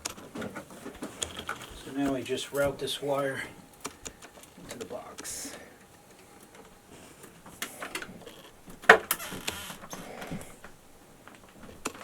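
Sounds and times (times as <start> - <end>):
clicks and knocks: 7.6 - 12.0.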